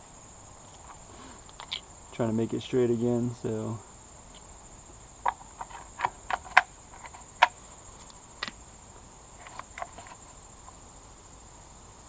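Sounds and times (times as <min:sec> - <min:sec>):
cricket trill: 0:00.0 - 0:12.0
hard plastic parts clicking: 0:05.2 - 0:07.6, 0:09.4 - 0:10.2.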